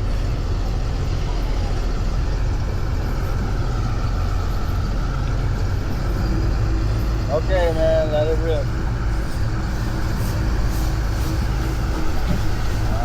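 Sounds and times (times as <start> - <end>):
boat engine rumbling: 0.0 - 13.0
faint wavering whine: 0.0 - 13.0.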